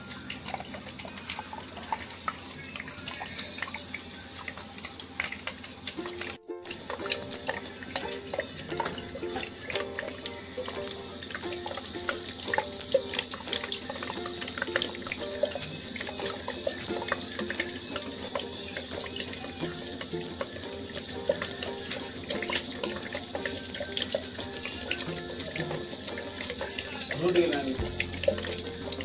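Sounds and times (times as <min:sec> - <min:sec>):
small fountain splashing: 0:00.0 - 0:29.0.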